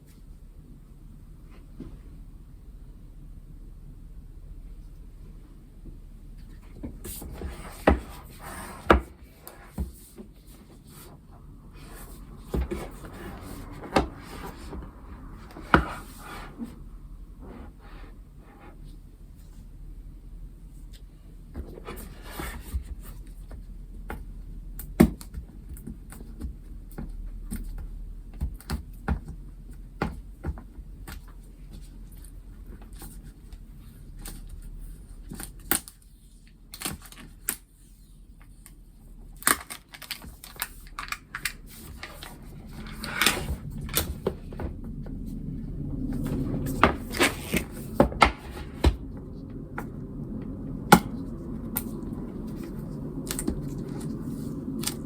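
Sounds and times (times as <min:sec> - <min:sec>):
rustling and sliding: 0:06.4 - 0:19.8, 0:37.2 - 0:55.0.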